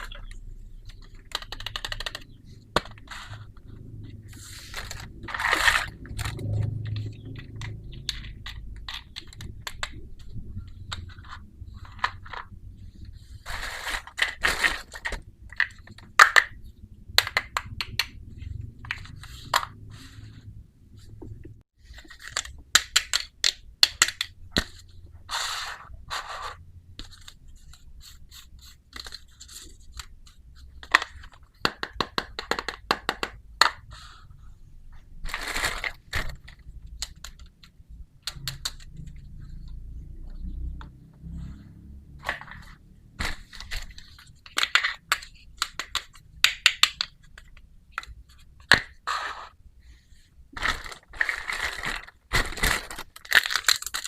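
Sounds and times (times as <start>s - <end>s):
plastic toy pieces clicking: 44.4s - 48.1s.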